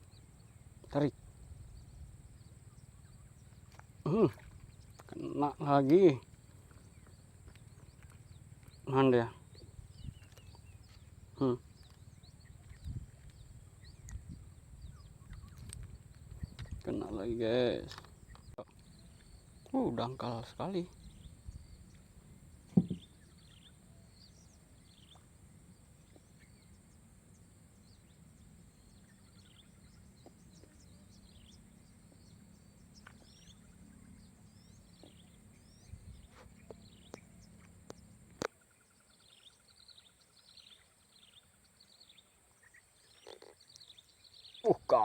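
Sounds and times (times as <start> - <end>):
birds chirping: 0.0 - 45.0
sharp knock: 22.8 - 23.0.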